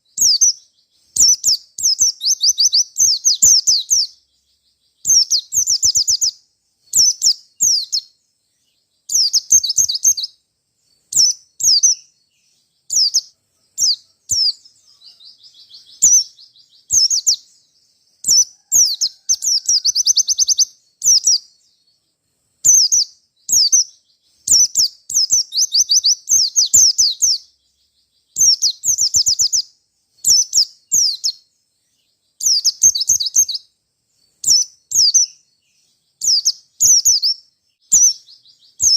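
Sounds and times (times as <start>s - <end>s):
bird chirping: 0.0s - 38.9s
bird trilling: 12.9s - 17.4s, 18.2s - 21.4s.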